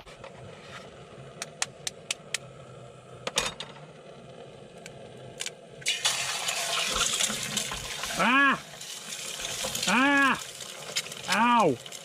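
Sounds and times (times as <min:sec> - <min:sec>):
sharp clicks and taps: 0:01.4 - 0:02.4
egg sizzling in frying pan: 0:05.8 - 0:12.0.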